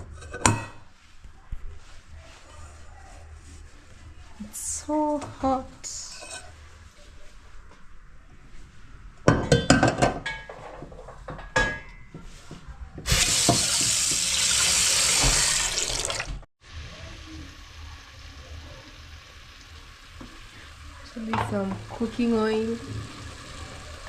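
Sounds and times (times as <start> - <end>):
kitchenware clinking: 9.3 - 12.2
kitchen tap running: 13.1 - 24.0.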